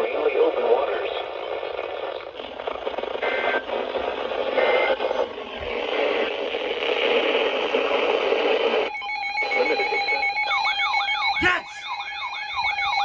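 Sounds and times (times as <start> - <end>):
weather radio broadcast: 0.0 - 2.2, 11.4 - 11.9.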